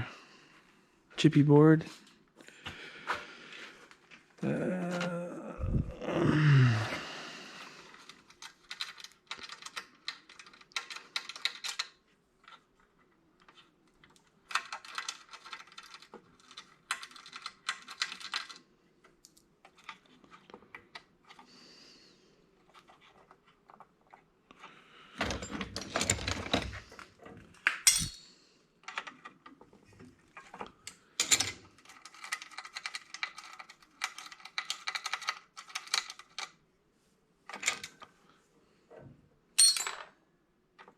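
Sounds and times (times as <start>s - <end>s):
metal parts clinking and rattling: 25.2s - 26.8s, 27.8s - 28.2s, 31.2s - 36.5s, 39.6s - 40.1s.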